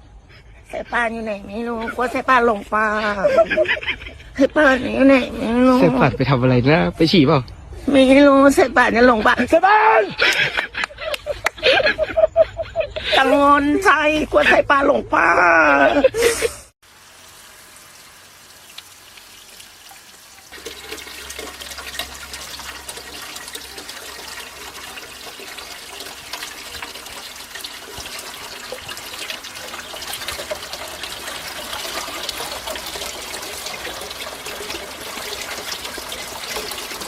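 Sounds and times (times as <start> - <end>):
rushing trickling water: 15.8 - 37.0.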